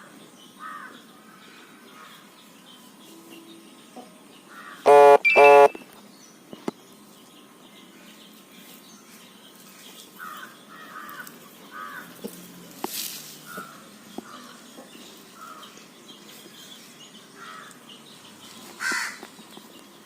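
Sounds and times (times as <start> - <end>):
small birds chirping: 0.0 - 20.0
loud short bird calls: 4.5 - 5.8.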